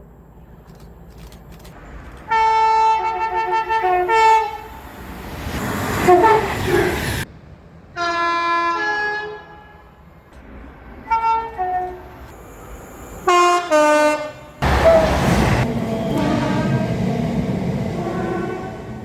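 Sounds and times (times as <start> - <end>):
train passing with loud rush: 0.0 - 19.0
train two-tone horn blasts: 2.3 - 4.8, 5.6 - 6.9, 8.0 - 10.0, 11.0 - 12.3, 13.2 - 19.0.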